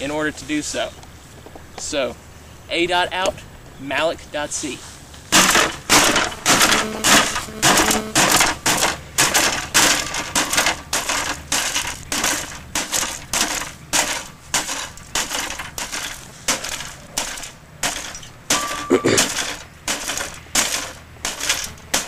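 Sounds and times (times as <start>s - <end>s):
parts cracking and crunching: 5.3s - 22.0s
hammer blows on computer: 5.4s - 10.6s.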